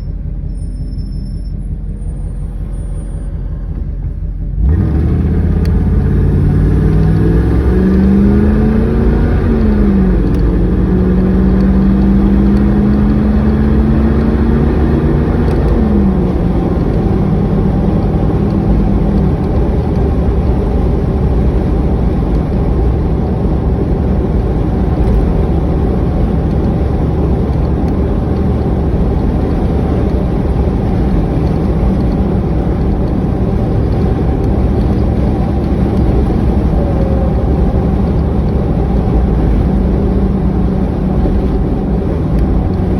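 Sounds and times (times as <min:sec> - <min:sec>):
engine running: 0:00.0 - 0:42.9.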